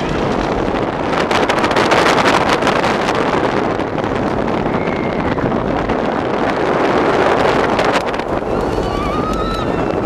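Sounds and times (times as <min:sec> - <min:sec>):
roller coaster rattling on track: 0:00.0 - 0:10.0
wind rushing over microphone: 0:00.0 - 0:10.0.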